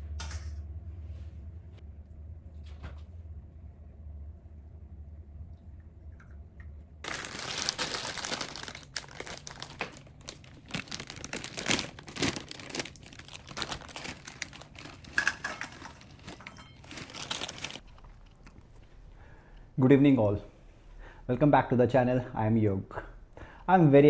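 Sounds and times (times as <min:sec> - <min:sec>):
packaging crinkling: 0:07.0 - 0:18.2.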